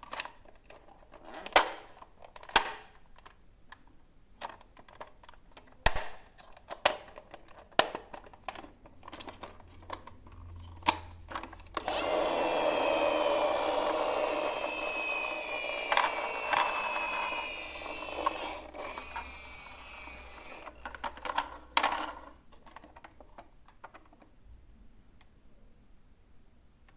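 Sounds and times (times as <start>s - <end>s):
plastic toy cars clattering: 0.0s - 24.4s
toy car wheels whirring: 11.3s - 22.4s.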